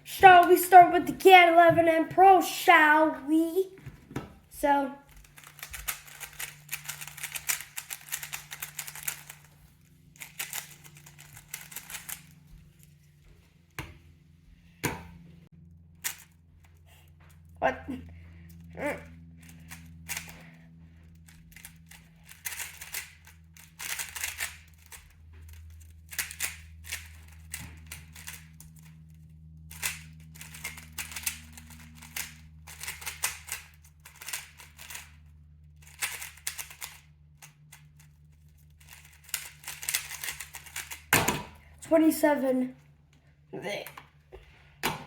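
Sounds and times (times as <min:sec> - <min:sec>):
steady low hum: 0:00.0 - 0:45.0
puzzle cube clacking turns: 0:05.2 - 0:12.4, 0:19.4 - 0:20.5, 0:21.2 - 0:28.6, 0:29.7 - 0:35.2, 0:35.8 - 0:37.8, 0:38.8 - 0:41.5.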